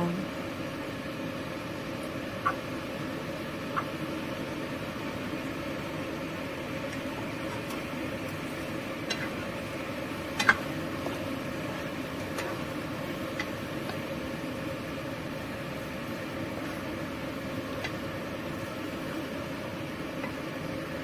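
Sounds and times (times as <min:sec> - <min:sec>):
frying pan hissing: 0:02.4 - 0:21.0
spatula clicking against pan: 0:09.0 - 0:09.4, 0:10.3 - 0:10.7.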